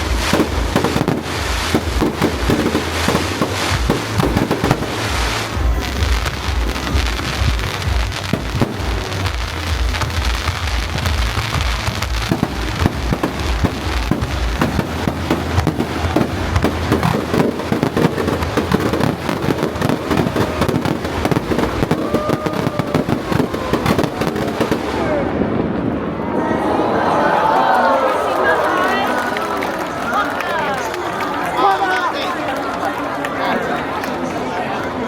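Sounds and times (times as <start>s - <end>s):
fireworks crackling: 0.0s - 26.5s
deep fireworks booms: 0.0s - 27.3s.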